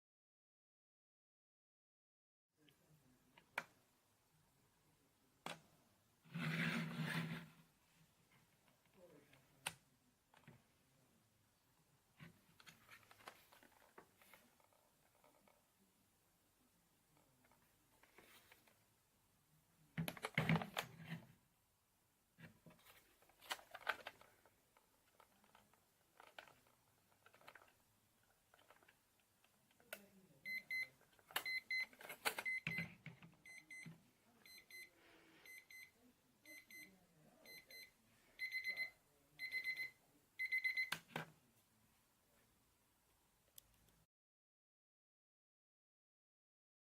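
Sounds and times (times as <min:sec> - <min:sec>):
alarm clock beeping: 0:30.4 - 0:32.8, 0:33.4 - 0:33.8, 0:34.4 - 0:35.9, 0:37.5 - 0:41.0.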